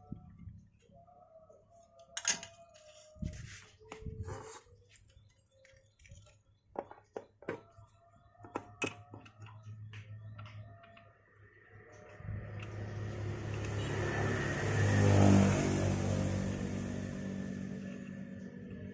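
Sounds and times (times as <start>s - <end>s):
metal tools clicking and knocking: 2.2s - 2.6s, 8.4s - 9.6s
engine running: 11.9s - 18.9s.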